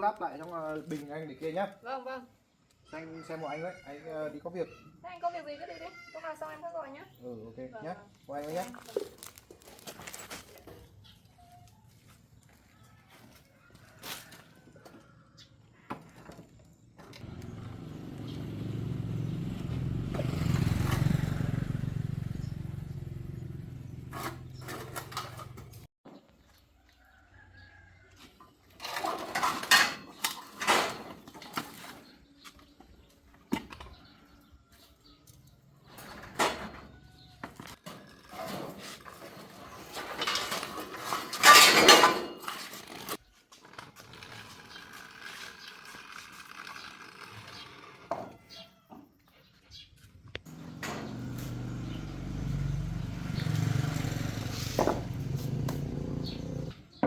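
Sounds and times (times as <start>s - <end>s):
metal tools clanking: 24.0s - 25.9s, 28.8s - 32.0s, 39.8s - 43.2s
low engine rumble: 50.5s - 56.7s.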